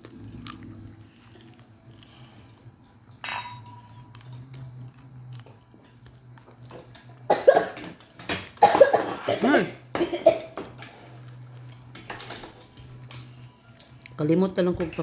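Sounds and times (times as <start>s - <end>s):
tableware clinking: 2.8s - 4.4s, 6.7s - 14.0s
person coughing loudly: 7.3s - 7.9s, 8.6s - 10.7s.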